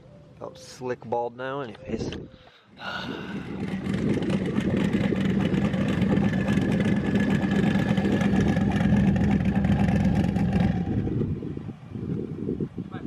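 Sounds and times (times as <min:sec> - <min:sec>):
engine at high revs: 0:03.3 - 0:11.3.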